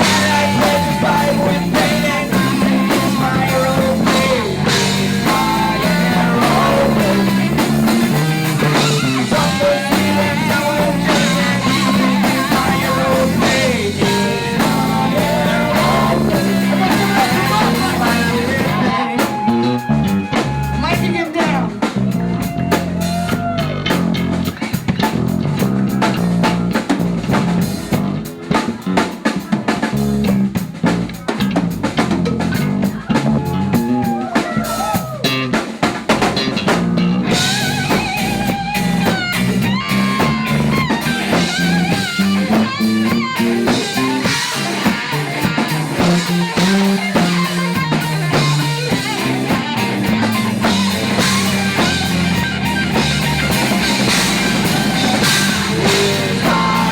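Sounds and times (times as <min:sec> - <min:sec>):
electric guitar bending notes: 0:00.0 - 0:21.2, 0:36.3 - 0:56.9
drum kit: 0:00.0 - 0:56.9.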